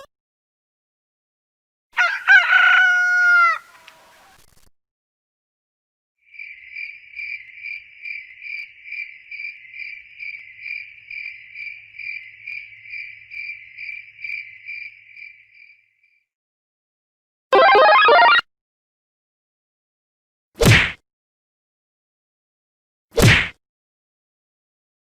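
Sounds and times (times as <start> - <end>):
crickets chirping: 6.2 - 16.2.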